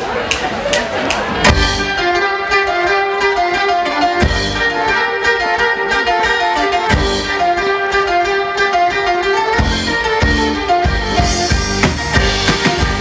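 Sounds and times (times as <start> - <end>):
plucked and bowed strings melody: 1.4 - 13.0
deep drum strikes: 6.9 - 7.3, 9.6 - 13.0.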